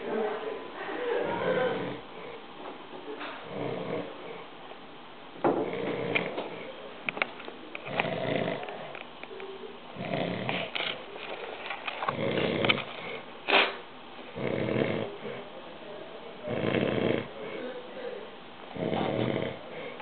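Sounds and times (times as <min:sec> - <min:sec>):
loud snoring: 0:01.2 - 0:02.4, 0:03.4 - 0:04.4, 0:05.6 - 0:06.7, 0:07.9 - 0:08.9, 0:09.9 - 0:10.7, 0:12.1 - 0:13.2, 0:14.3 - 0:15.4, 0:16.5 - 0:17.6, 0:18.7 - 0:20.0.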